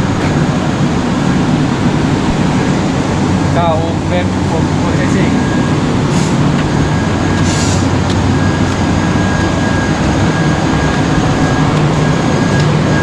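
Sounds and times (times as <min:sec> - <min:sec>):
low hum: 0:00.0 - 0:13.0
mechanical rumble: 0:00.0 - 0:13.0.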